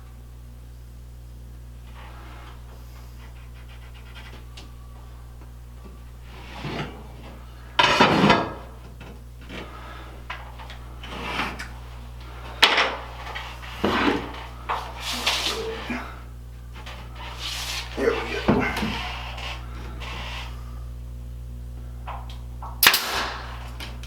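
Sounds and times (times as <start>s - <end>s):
steady low hum: 0.0s - 24.0s
wooden boards scraping: 6.3s - 8.7s, 10.9s - 16.2s, 16.8s - 20.6s.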